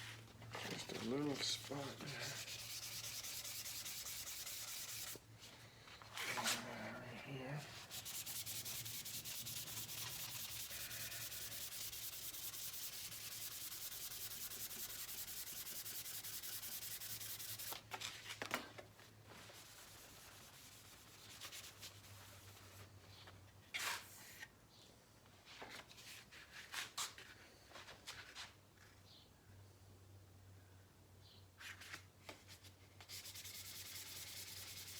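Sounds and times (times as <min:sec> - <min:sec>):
sandpaper rubbing by hand: 0:00.7 - 0:05.2, 0:07.6 - 0:17.8, 0:19.5 - 0:22.8, 0:33.0 - 0:34.9.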